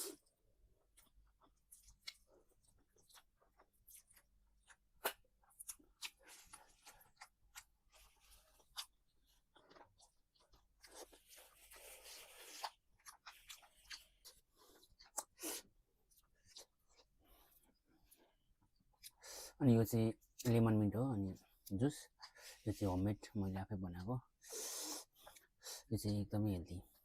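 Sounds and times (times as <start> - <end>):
chewing and crunching: 0.8 - 15.4.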